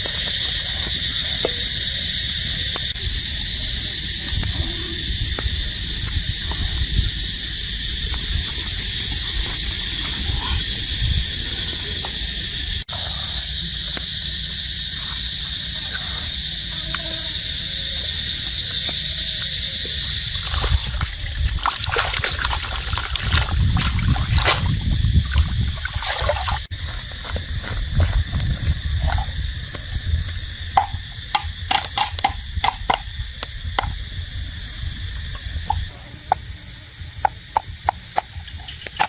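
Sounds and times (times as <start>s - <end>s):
insect drone: 0.0s - 39.0s
water splashing and sloshing: 20.3s - 26.7s.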